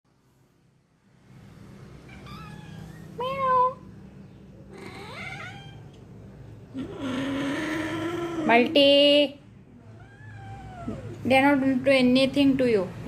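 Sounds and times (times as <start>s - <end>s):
cat meowing: 2.1s - 3.5s, 4.7s - 6.0s, 10.0s - 11.2s.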